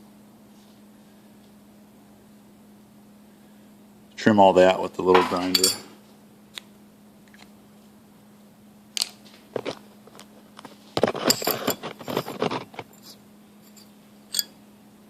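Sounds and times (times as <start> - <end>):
metal parts clinking: 5.5 - 5.9, 11.0 - 14.5
metal parts clattering: 11.0 - 14.5.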